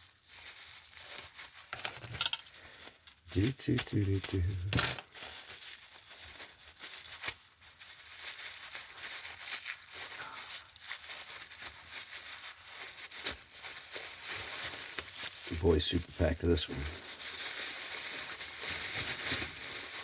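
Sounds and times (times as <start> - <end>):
packaging crinkling and tearing: 0.0 - 1.7, 2.4 - 20.0.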